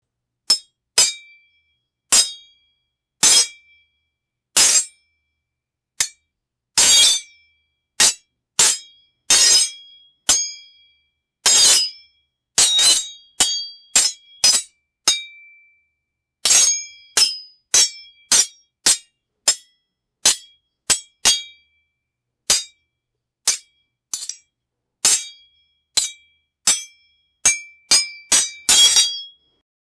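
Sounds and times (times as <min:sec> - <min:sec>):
sword blades clashing: 0:23.5 - 0:24.4, 0:27.5 - 0:29.3.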